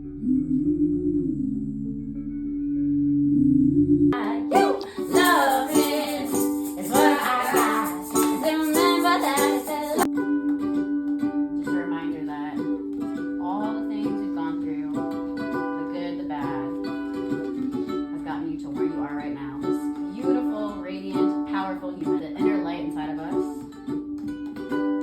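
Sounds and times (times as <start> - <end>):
person singing: 4.2 - 10.1
ukulele strumming: 4.2 - 25.0.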